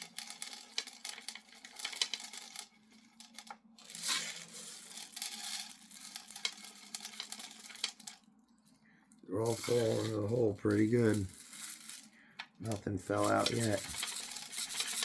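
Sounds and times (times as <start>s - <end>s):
steel pellets poured rattling: 0.0s - 8.2s, 9.4s - 15.0s.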